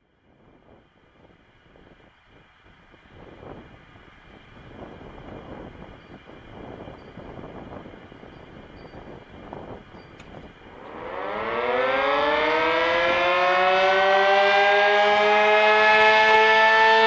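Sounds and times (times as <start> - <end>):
dual-tone warning siren winding up: 10.0 - 17.0.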